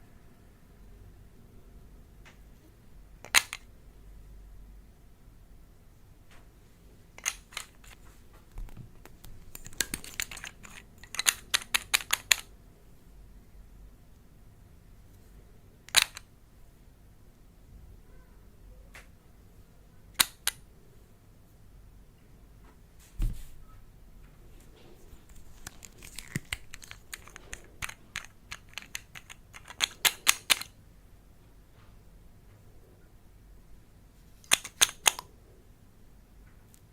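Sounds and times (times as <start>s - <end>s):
dull thump: 23.2s - 23.6s.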